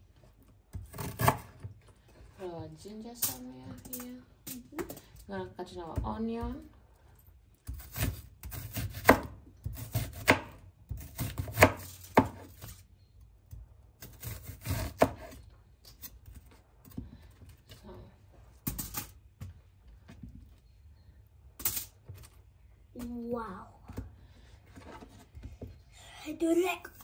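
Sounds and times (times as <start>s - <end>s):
knife chopping on board: 7.6s - 12.7s.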